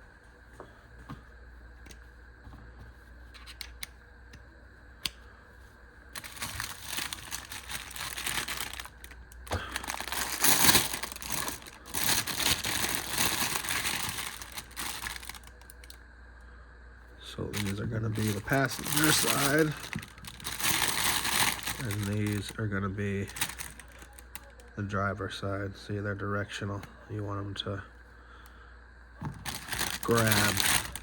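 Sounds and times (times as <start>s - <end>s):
plastic packaging crinkling: 6.1s - 16.0s, 17.5s - 24.7s, 29.4s - 31.0s.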